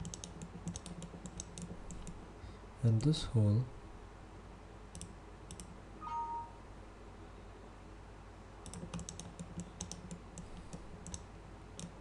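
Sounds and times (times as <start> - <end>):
computer mouse clicking: 0.0 - 2.2, 4.9 - 5.7, 8.6 - 12.0
two-note electronic chime: 6.0 - 6.6.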